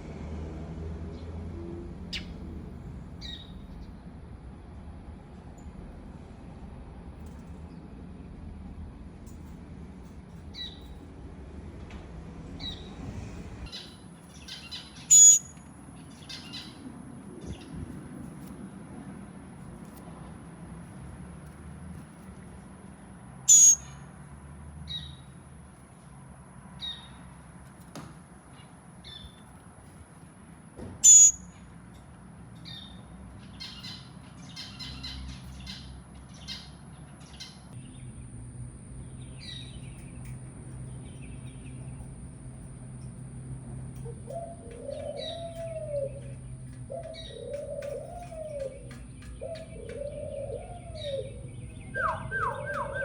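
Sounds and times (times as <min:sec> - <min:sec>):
birds chirping: 0:02.0 - 0:04.1, 0:13.6 - 0:17.9, 0:23.5 - 0:24.0, 0:31.0 - 0:31.6, 0:32.6 - 0:53.0
low arching bird calls: 0:13.7 - 0:16.8, 0:23.5 - 0:24.0, 0:31.0 - 0:31.4, 0:44.0 - 0:53.0
low hum: 0:37.8 - 0:47.0.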